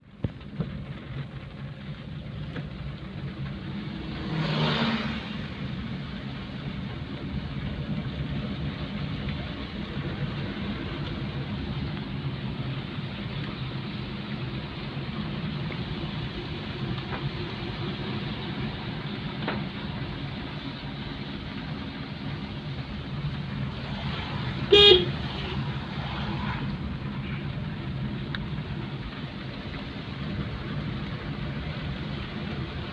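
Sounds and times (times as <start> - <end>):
vehicle rumble and road noise: 0.0 - 32.9
car horn toot: 24.7 - 25.6.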